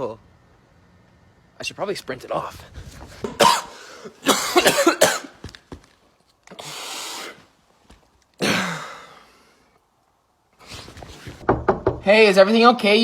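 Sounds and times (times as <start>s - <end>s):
person coughing: 3.3s - 5.4s, 8.4s - 9.2s.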